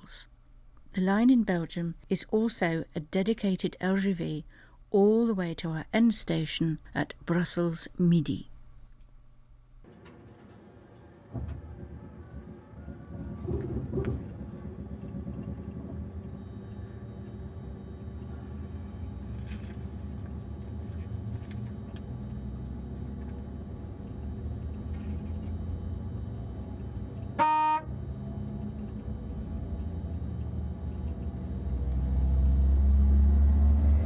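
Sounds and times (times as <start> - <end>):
train running rumble: 9.9 - 34.0
short loud tone: 27.3 - 28.0.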